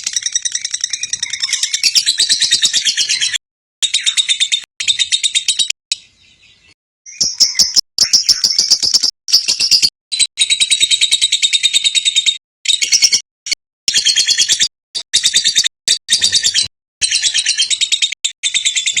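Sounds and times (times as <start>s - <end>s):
lovebird chattering trills: 7.1s - 13.2s.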